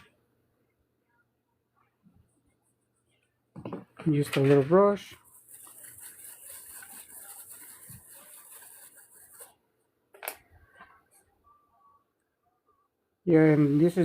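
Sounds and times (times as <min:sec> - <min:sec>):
brush scrubbing circuit board: 0:05.2 - 0:09.6.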